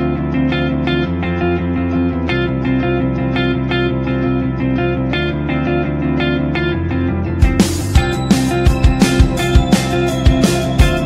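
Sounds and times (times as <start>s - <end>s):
plucked guitar: 0.0s - 11.0s
drums and crash cymbal: 7.4s - 11.0s.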